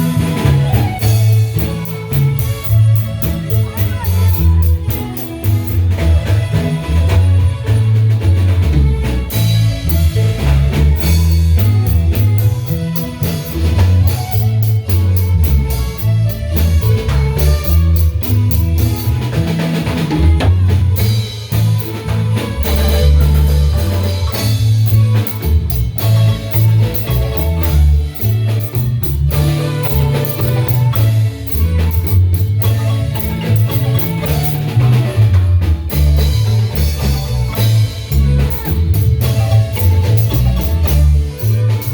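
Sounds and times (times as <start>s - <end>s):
drum kit beat: 0.8s - 6.1s, 9.3s - 41.9s
marimba dance tune: 20.9s - 41.9s.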